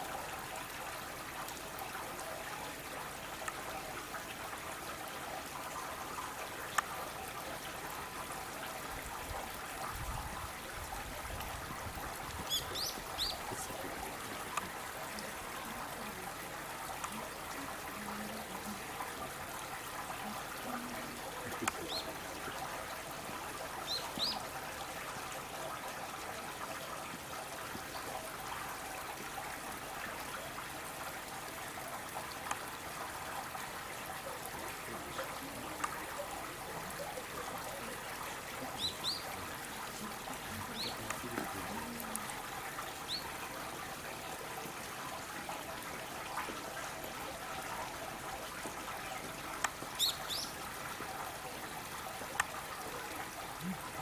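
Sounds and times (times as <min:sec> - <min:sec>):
trickling water: 0:00.0 - 0:54.0
small birds chirping: 0:12.4 - 0:13.7, 0:23.8 - 0:24.5, 0:38.7 - 0:39.4, 0:40.7 - 0:41.2, 0:49.9 - 0:50.6.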